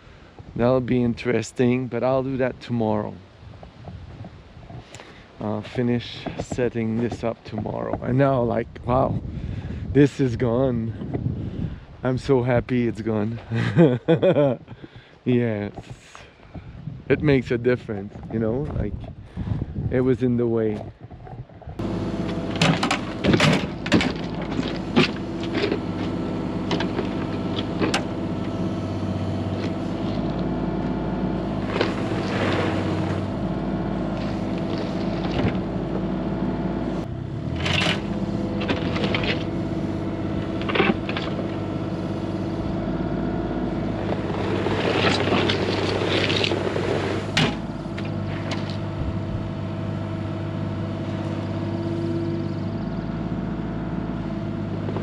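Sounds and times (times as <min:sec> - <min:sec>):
excavator engine running: 0:21.6 - 0:55.0
clanks and scraping of concrete: 0:44.1 - 0:48.8.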